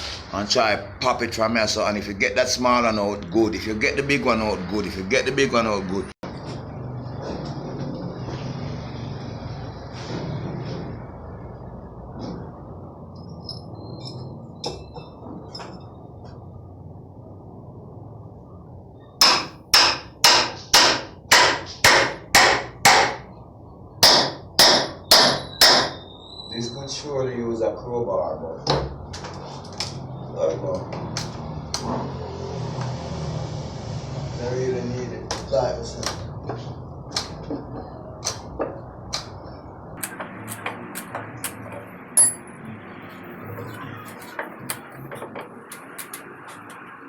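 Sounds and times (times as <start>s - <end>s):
hammer striking wooden boards: 19.2s - 23.2s, 24.0s - 26.0s
loud metallic clink: 42.2s - 42.6s.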